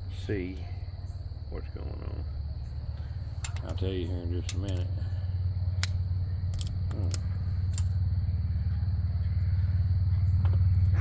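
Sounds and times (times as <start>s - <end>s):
high insect trill: 0.0s - 11.0s
low mechanical hum: 0.0s - 11.0s
small metal parts clicking: 3.4s - 3.8s, 4.4s - 4.9s, 5.8s - 8.0s.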